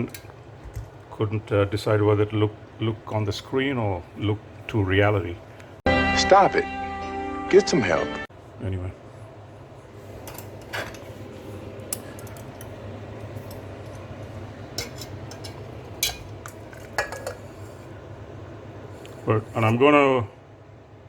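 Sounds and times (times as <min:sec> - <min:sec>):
metal kitchenware clinking: 0:00.0 - 0:00.9, 0:10.2 - 0:11.2, 0:11.8 - 0:17.8
steady low hum: 0:00.0 - 0:05.8, 0:08.3 - 0:21.0.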